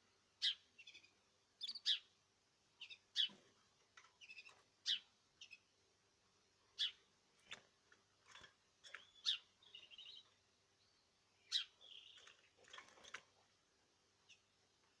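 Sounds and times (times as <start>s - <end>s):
birds chirping: 8.8s - 12.8s.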